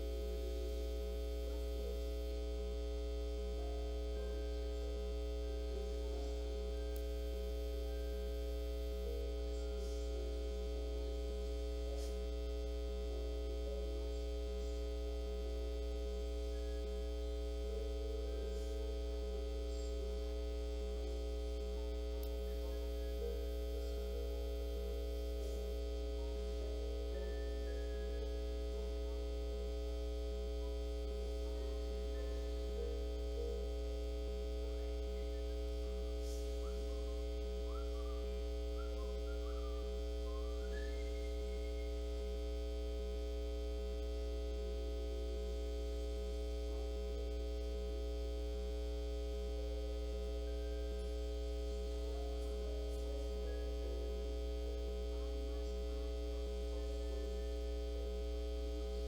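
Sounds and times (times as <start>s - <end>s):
electrical mains hum: 0.0s - 59.0s
pulsing tone: 3.2s - 45.8s.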